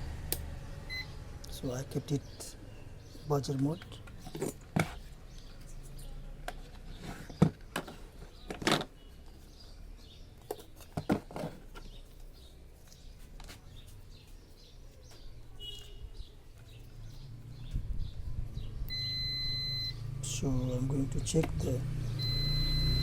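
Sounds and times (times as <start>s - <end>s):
faint high chirps: 0.8s - 1.3s, 18.9s - 20.1s, 22.2s - 23.0s.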